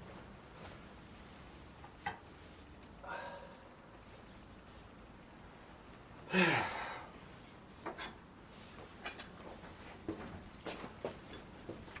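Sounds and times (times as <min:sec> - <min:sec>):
man sighing: 0:03.0 - 0:03.7, 0:06.3 - 0:07.1.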